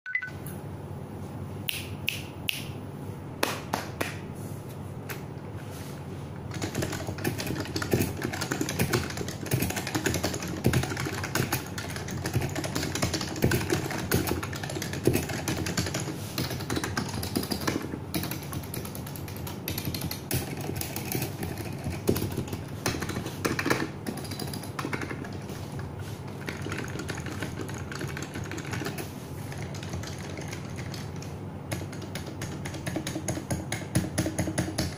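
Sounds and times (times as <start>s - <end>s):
typing on mechanical keyboard: 6.5s - 25.5s, 26.3s - 34.9s.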